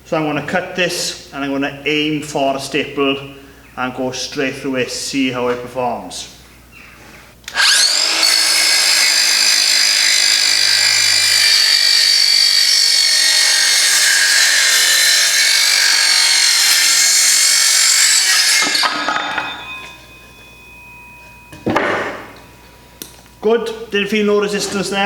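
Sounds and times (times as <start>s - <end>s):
circular saw cutting wood: 7.5s - 21.6s.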